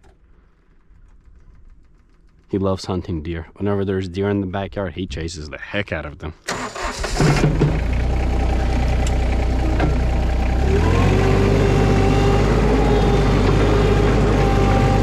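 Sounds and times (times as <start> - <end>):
engine running: 6.5 - 15.0.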